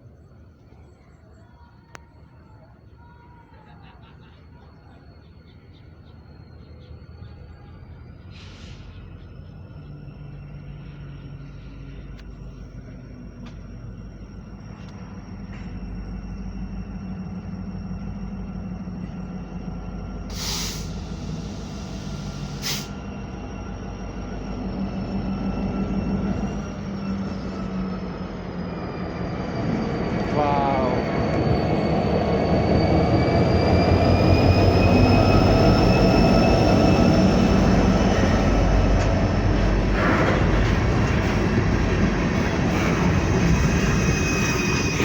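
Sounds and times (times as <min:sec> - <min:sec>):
locomotive engine drone: 0:00.0 - 0:45.0
air hisses: 0:20.3 - 0:23.0.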